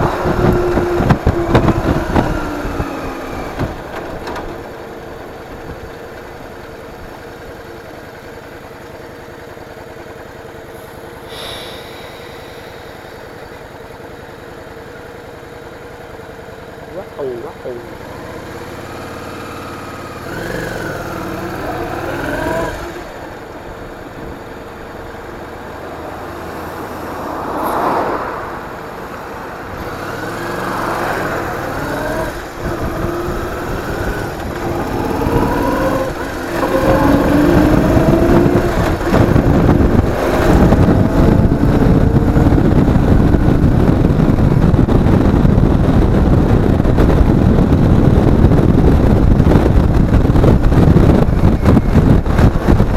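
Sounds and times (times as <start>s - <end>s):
wind rush on microphone: 0.0s - 3.9s, 26.5s - 52.9s
motorcycle engine revving: 0.0s - 52.9s.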